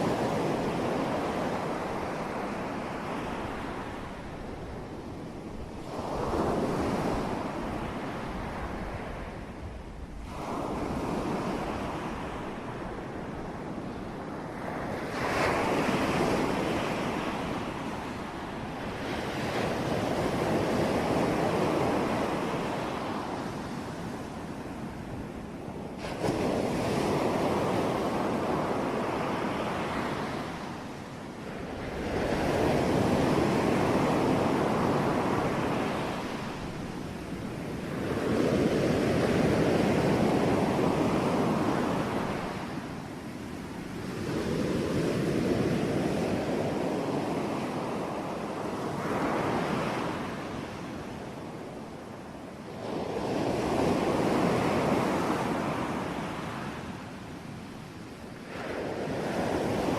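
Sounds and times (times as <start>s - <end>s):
ocean waves breaking on shore: 0.0s - 59.9s.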